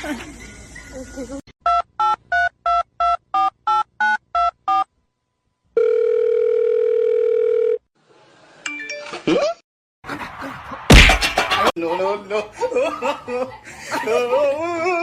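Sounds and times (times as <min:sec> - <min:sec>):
steady telephone tone: 0:05.8 - 0:07.8.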